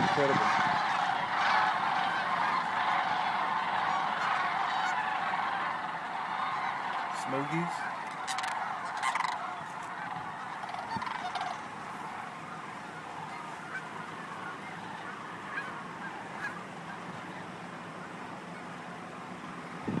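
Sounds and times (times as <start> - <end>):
geese and cranes calling: 0.0 - 20.0.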